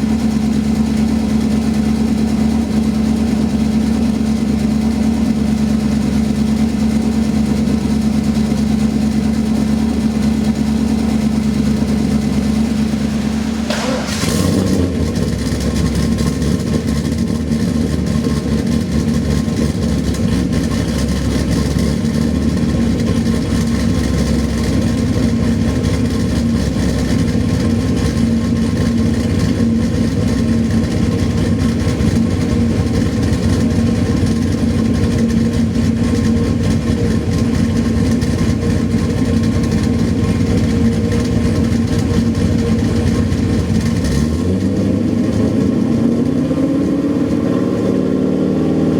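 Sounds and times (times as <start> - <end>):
car engine idling: 0.0 - 48.9.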